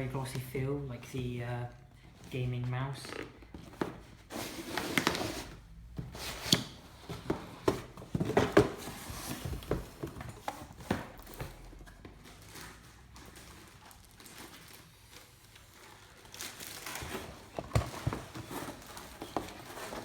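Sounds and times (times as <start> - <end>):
cardboard box rustling and sliding: 3.7 - 11.4, 17.0 - 20.0.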